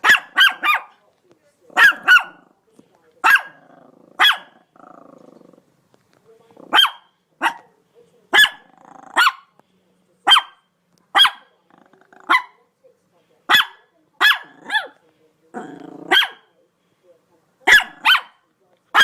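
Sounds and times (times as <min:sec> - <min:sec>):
dog barking: 0:00.0 - 0:01.0, 0:01.8 - 0:02.5, 0:03.2 - 0:04.7, 0:06.7 - 0:07.7, 0:08.3 - 0:09.5, 0:10.3 - 0:11.5, 0:12.2 - 0:12.6, 0:13.5 - 0:15.0, 0:16.0 - 0:16.5, 0:17.6 - 0:19.0
dog growling: 0:03.4 - 0:05.8, 0:06.4 - 0:06.8, 0:08.6 - 0:09.3, 0:11.6 - 0:12.4, 0:14.4 - 0:16.4.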